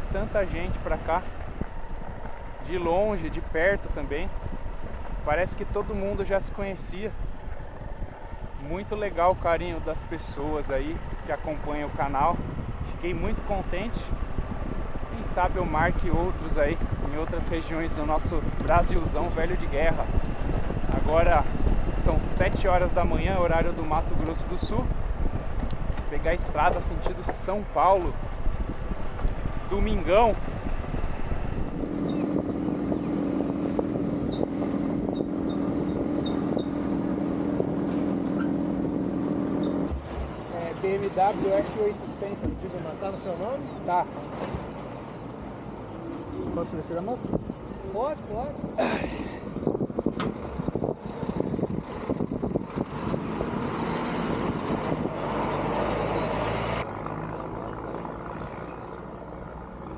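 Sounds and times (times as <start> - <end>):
motorcycle engine running: 0.0 - 40.5, 49.4 - 53.7
rush of riding wind: 0.0 - 59.9.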